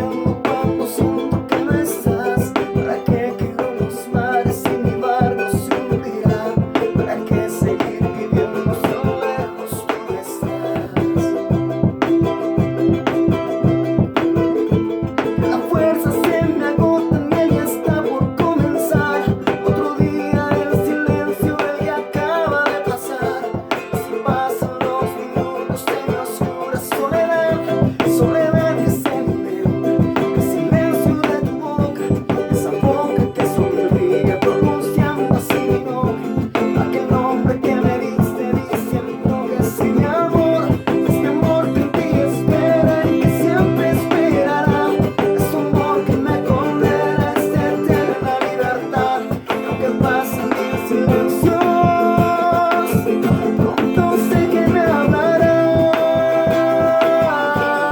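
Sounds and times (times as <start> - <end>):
acoustic guitar strumming: 0.0 - 57.9
melody over guitar: 0.0 - 57.9.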